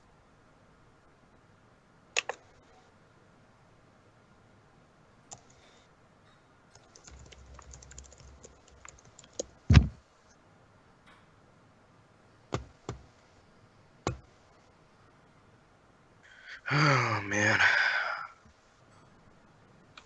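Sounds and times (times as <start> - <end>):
typing on computer keyboard: 2.2 - 2.4, 6.8 - 9.6
loud dull thump: 9.7 - 10.0.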